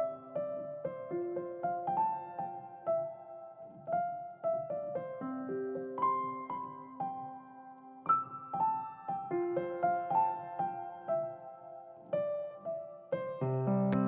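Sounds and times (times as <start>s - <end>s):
gentle solo piano melody: 0.0s - 14.0s.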